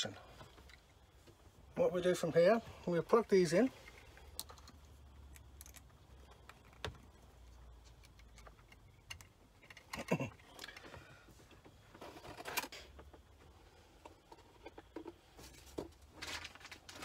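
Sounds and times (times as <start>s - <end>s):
low steady hum: 0.0s - 17.0s
rustling: 11.4s - 17.0s.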